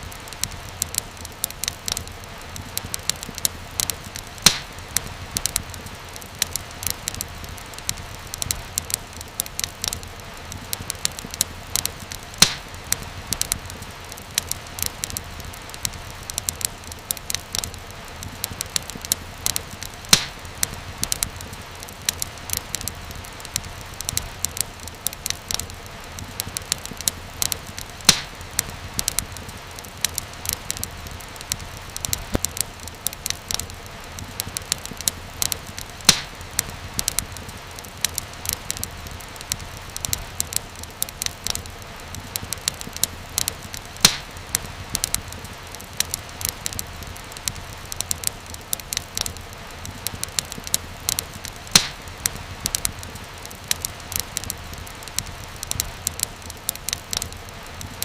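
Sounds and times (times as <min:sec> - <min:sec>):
wood fire crackling: 0:00.0 - 0:58.0
loud sharp pop: 0:51.8 - 0:52.0.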